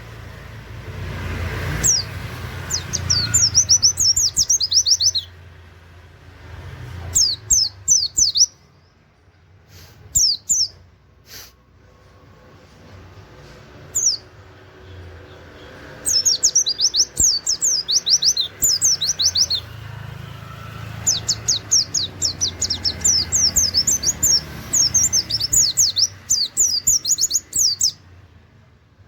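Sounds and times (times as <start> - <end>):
bird singing fast high notes: 1.8 - 5.4, 15.9 - 19.8, 20.4 - 28.0.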